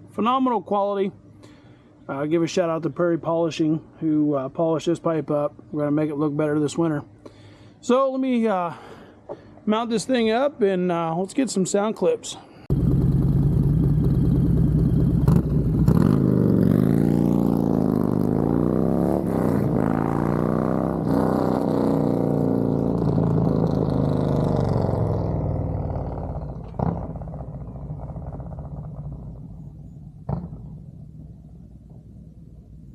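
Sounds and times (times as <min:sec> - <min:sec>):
motorcycle engine revving: 0:12.7 - 0:31.2.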